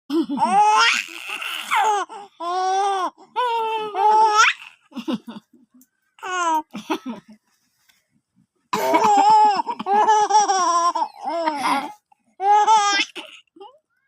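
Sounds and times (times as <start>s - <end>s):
baby laughing: 8.8s - 13.5s.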